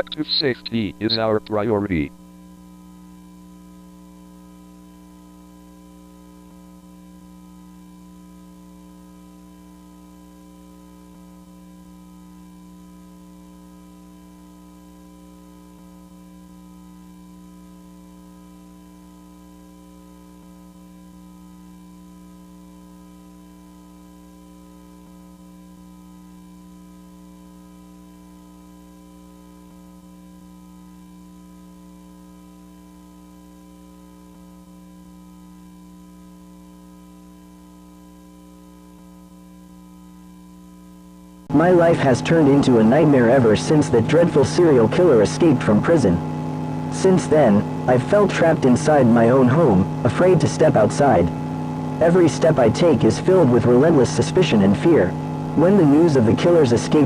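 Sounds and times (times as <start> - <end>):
low electronic hum: 0.0 - 57.0
pulsing high tone: 41.5 - 57.0.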